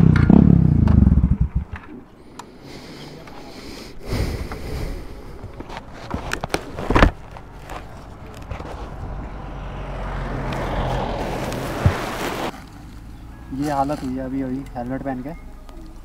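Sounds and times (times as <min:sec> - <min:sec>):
motorcycle engine running: 0:00.0 - 0:01.8.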